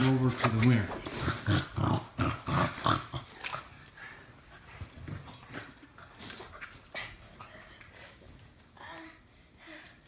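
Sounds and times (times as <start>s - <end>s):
dogs scuffling and breathing: 0.0s - 8.8s
dogs growling and snarling: 1.0s - 4.1s.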